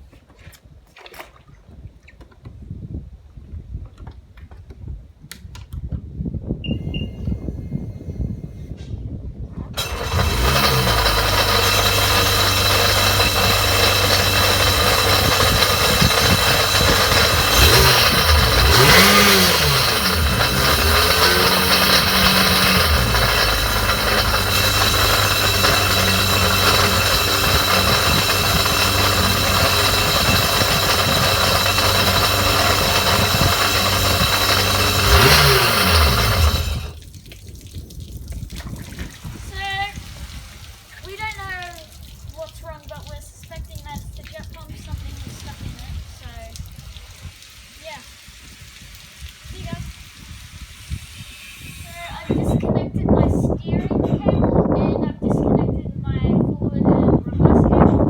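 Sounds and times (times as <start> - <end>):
watercraft engine idling and revving: 9.8 - 37.0, 50.7 - 53.8.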